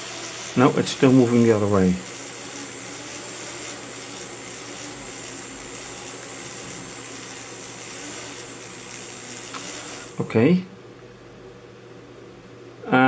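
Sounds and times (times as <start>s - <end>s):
small propeller motors whirring: 0.0s - 10.3s.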